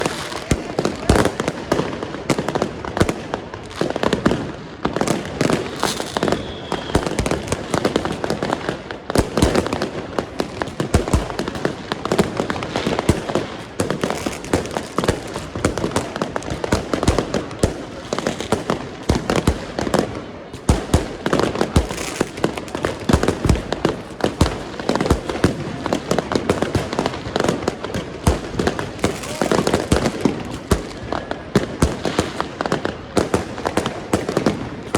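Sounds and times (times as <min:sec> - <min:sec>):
fireworks bangs and crackles: 0:00.0 - 0:34.9
firework whistle: 0:05.4 - 0:08.3.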